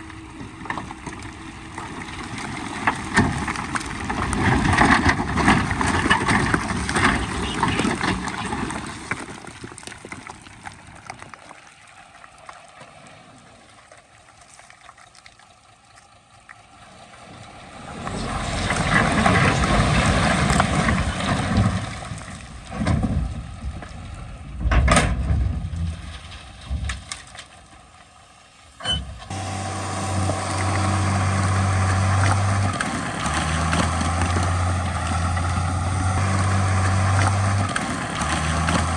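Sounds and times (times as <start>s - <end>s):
heavy diesel machinery working: 0.0s - 9.3s, 17.5s - 26.0s, 28.8s - 38.9s
low-pitched engine note: 17.2s - 26.9s, 28.9s - 38.9s.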